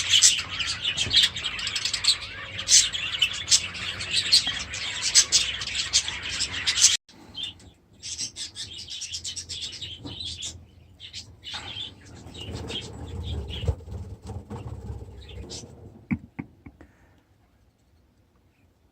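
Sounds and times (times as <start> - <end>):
budgerigars chirping and chattering: 0.0 - 13.8, 15.2 - 15.6.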